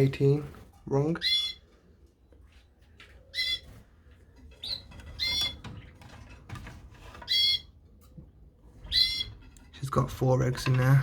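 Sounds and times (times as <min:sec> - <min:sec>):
canary call notes: 0:03.3 - 0:03.7, 0:07.3 - 0:07.7, 0:08.9 - 0:09.4.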